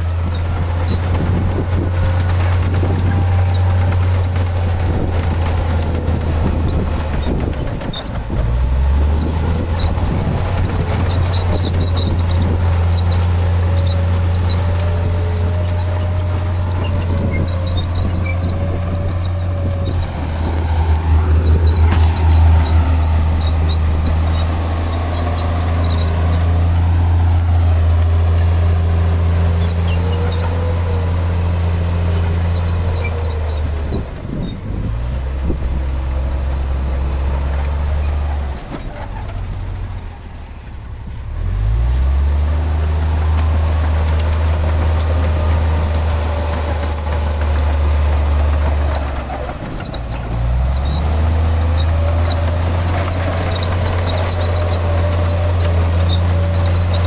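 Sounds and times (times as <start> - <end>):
heavy diesel engine revving: 0.0 - 57.0.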